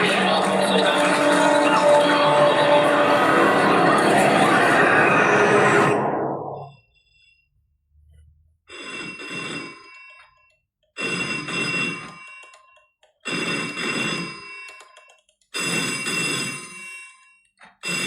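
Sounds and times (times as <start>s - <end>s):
loud noise: 0.0s - 6.8s
telephone bell ringing: 8.7s - 18.0s.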